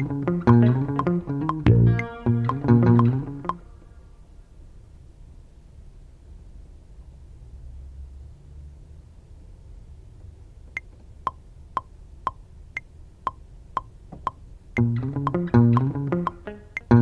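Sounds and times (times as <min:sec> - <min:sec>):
bass and guitar beat: 0:00.0 - 0:03.7, 0:14.8 - 0:17.0
metronome clicking: 0:00.0 - 0:03.7, 0:10.8 - 0:17.0.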